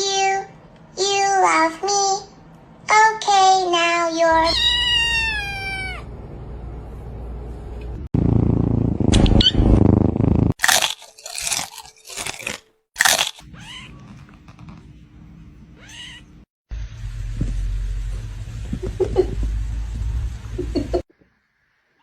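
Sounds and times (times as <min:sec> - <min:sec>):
kitten meowing: 0:04.3 - 0:06.1, 0:13.4 - 0:14.2, 0:15.8 - 0:16.3
crunching and rustling: 0:10.6 - 0:14.8.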